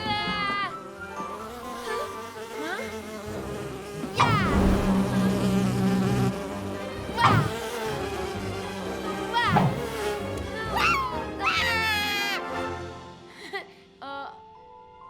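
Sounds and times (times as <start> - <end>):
steady buzzing drone: 0.0 - 10.7.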